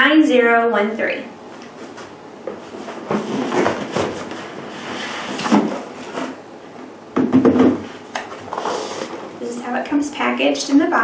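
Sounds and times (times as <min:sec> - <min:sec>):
cardboard packaging scraping and rustling: 0:02.7 - 0:06.4, 0:08.3 - 0:09.3.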